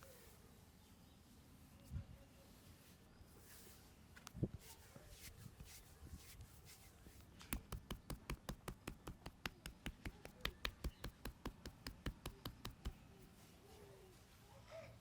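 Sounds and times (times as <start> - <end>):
hands tapping on head: 7.5 - 13.2.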